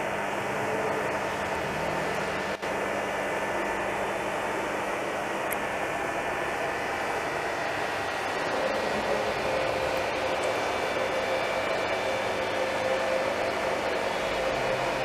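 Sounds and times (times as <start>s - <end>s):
mechanical hum and hiss: 0.0s - 15.0s.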